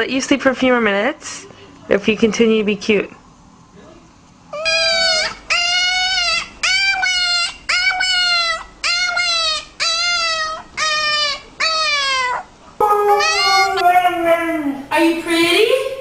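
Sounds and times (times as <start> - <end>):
pet's high vocal calls: 4.5 - 13.8.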